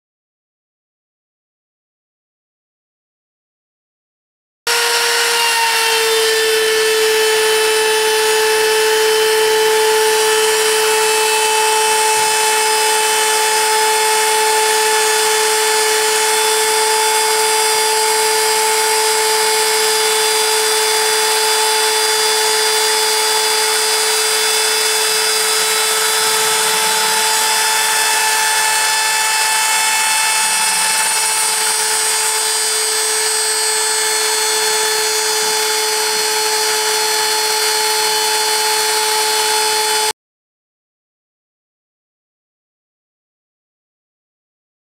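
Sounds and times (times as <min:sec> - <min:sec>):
router spindle whine: 0:04.7 - 0:40.1.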